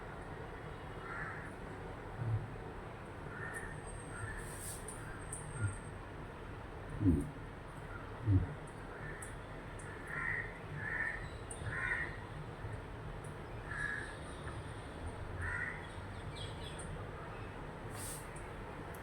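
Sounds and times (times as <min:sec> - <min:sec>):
bird harsh caw-like calls: 0:01.0 - 0:01.5, 0:03.3 - 0:04.4, 0:07.9 - 0:12.3, 0:13.7 - 0:14.2, 0:15.4 - 0:16.0.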